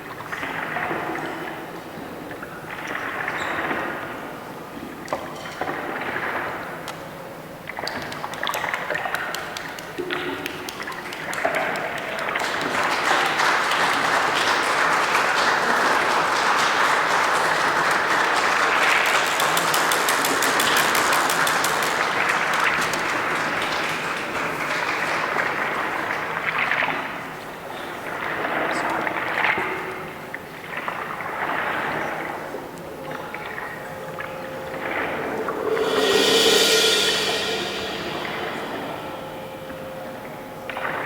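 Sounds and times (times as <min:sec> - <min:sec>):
people clapping and snapping: 0:07.8 - 0:27.1.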